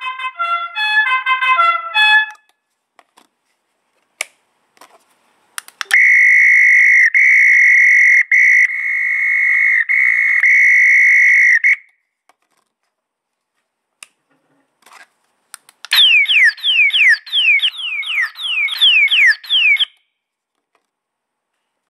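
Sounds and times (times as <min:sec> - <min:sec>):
falling whistle-like chirps: 0:05.8 - 0:11.9, 0:15.9 - 0:20.1.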